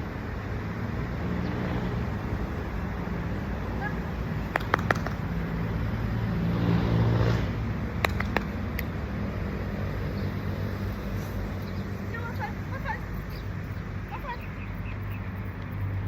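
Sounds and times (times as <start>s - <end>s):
motor vehicle passing: 0.0s - 16.0s
traffic rumble: 0.0s - 16.0s
sharp clicks: 4.4s - 5.6s, 8.0s - 9.0s.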